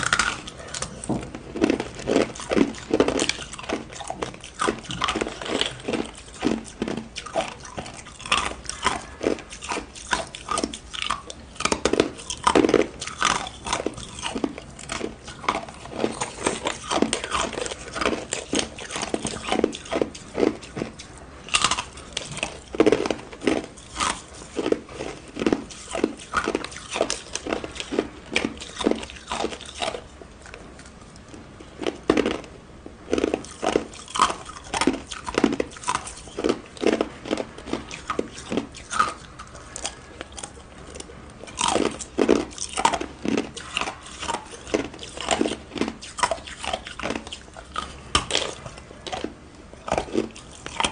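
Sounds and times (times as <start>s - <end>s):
ice being chewed: 0.0s - 32.5s, 33.1s - 50.9s.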